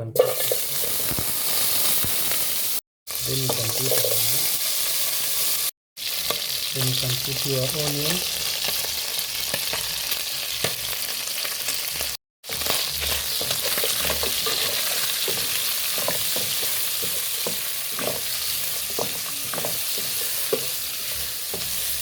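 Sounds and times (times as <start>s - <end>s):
beef and onion sizzling: 0.2s - 22.0s
spoon scraping pot: 13.3s - 22.0s.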